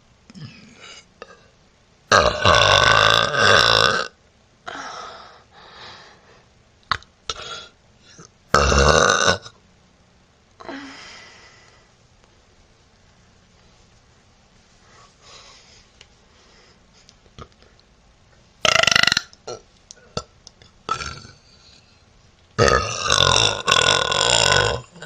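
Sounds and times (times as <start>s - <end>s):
woman burping loudly: 2.1s - 4.2s, 8.5s - 9.6s, 18.6s - 20.3s, 20.9s - 21.8s, 22.6s - 25.0s.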